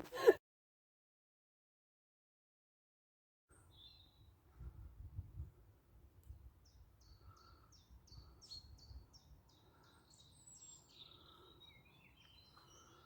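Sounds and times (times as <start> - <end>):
songbird singing: 3.5 - 4.4, 6.3 - 13.0.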